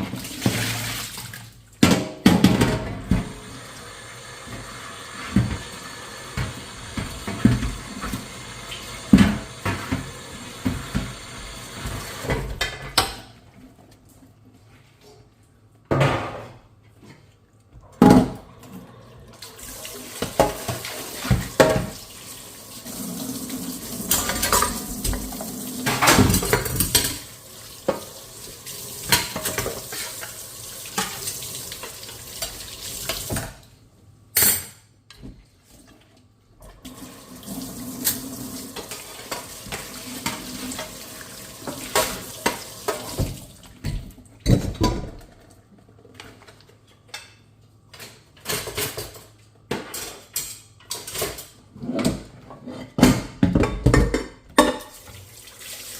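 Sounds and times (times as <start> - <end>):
tap water running: 0.0 - 1.6, 2.4 - 13.1, 19.2 - 33.6, 36.6 - 45.4, 53.8 - 55.9.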